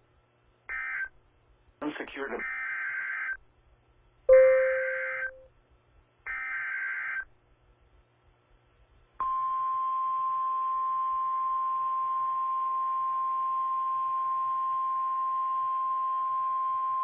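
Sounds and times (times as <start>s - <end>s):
steady warning alarm tone: 4.3s - 5.4s.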